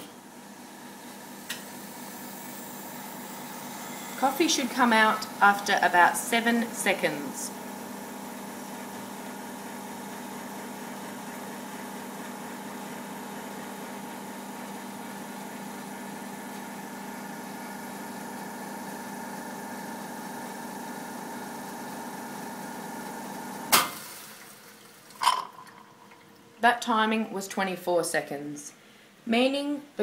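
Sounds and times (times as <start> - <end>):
espresso machine pump humming: 0.0 - 23.7.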